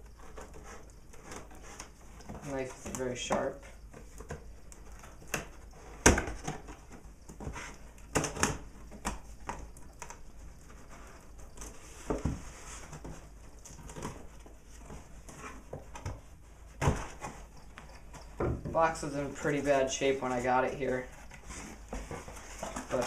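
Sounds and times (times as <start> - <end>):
cardboard knocks and scrapes: 0.0 - 10.1, 10.7 - 19.7, 20.4 - 23.0
knife cutting cardboard box: 0.0 - 17.5.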